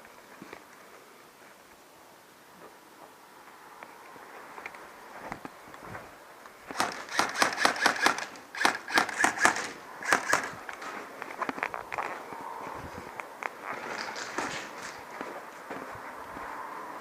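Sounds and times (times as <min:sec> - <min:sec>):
airsoft gun firing: 0:06.7 - 0:10.6.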